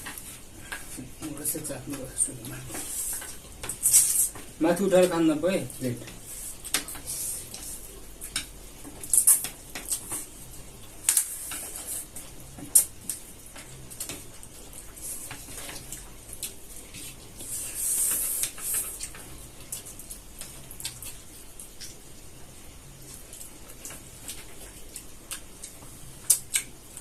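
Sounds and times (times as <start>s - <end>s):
chopsticks clicking against plates: 6.0s - 14.2s, 23.4s - 27.0s.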